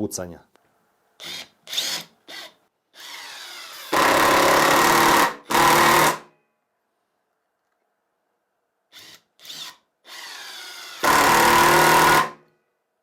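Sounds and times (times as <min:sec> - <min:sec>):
impact driver hammering: 0:03.9 - 0:06.3, 0:11.0 - 0:12.4.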